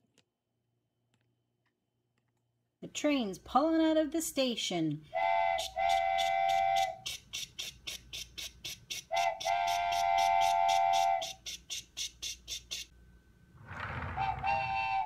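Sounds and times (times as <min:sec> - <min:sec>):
steam whistle blowing: 0:05.1 - 0:07.1, 0:09.1 - 0:11.6, 0:14.0 - 0:15.0
steam locomotive chuffing: 0:13.6 - 0:15.0.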